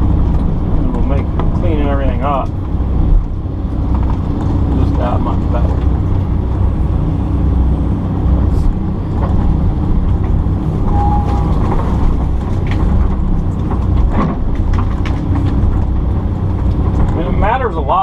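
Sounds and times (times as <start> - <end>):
excavator diesel engine: 0.0 - 18.0
brief higher whine: 10.6 - 12.4.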